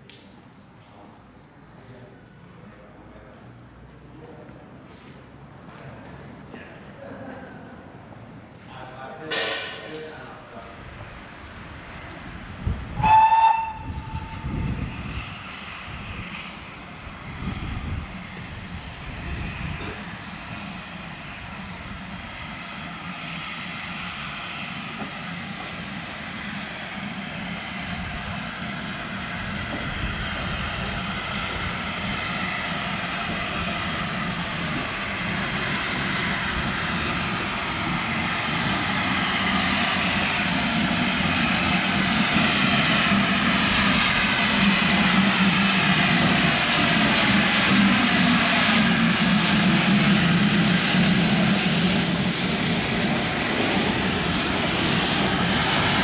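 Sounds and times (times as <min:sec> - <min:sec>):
train running noise: 0:01.0 - 0:56.0
steam locomotive whistle: 0:13.0 - 0:14.7.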